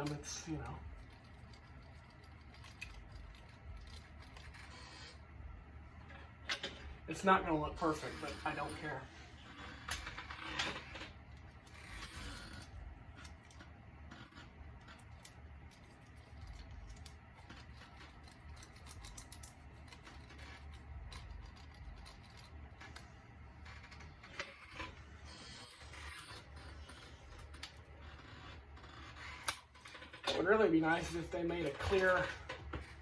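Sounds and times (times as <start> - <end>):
low steady hum: 0.0 - 33.0
tape peeling and tearing: 9.4 - 30.3.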